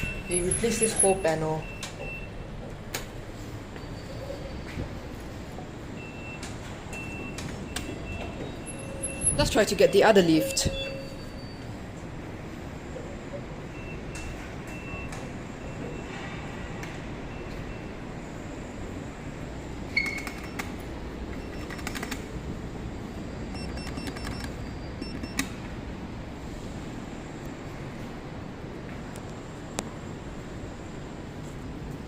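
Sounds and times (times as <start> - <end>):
low background noise: 0.0 - 32.0
short high beep: 10.3 - 11.6.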